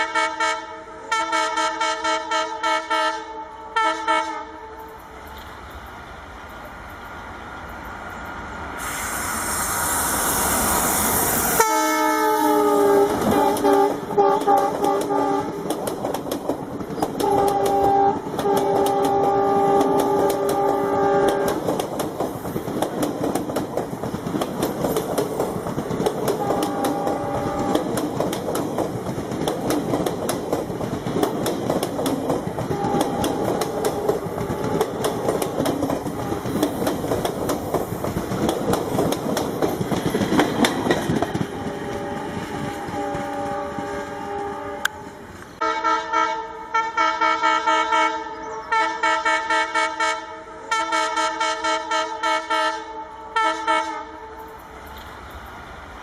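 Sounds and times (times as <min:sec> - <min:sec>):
locomotive air horn honking: 0:00.0 - 0:05.0, 0:11.5 - 0:15.6, 0:17.2 - 0:21.6, 0:26.4 - 0:27.9, 0:32.7 - 0:35.4, 0:41.5 - 0:54.6
train wheels clacking over rail joints: 0:12.8 - 0:45.0.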